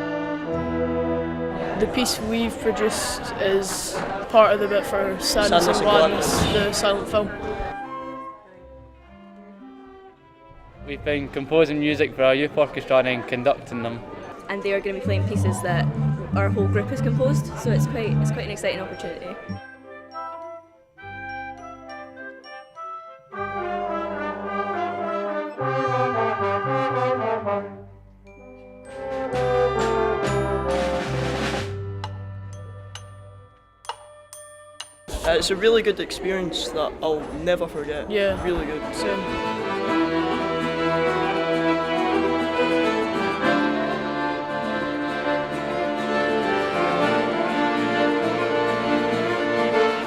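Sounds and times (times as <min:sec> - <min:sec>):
orchestra playing sustained chords: 0:00.0 - 0:03.3, 0:23.3 - 0:27.9, 0:38.5 - 0:50.0
brass chords: 0:00.0 - 0:03.4, 0:14.8 - 0:20.4, 0:21.0 - 0:33.0, 0:38.5 - 0:50.0
accordion: 0:00.0 - 0:10.7, 0:14.5 - 0:19.8, 0:38.5 - 0:50.0
fiddle: 0:38.5 - 0:50.0.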